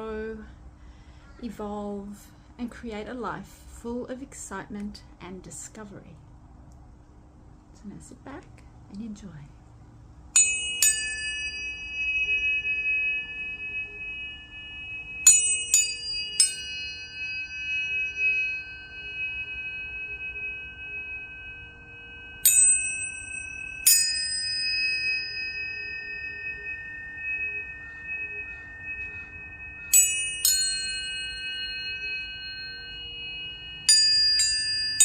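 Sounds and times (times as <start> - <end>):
tuning forks ringing: 10.3 - 35.0.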